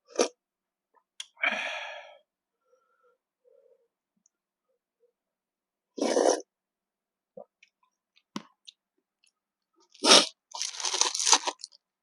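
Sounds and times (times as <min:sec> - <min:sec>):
crunchy bite: 0:10.0 - 0:11.7.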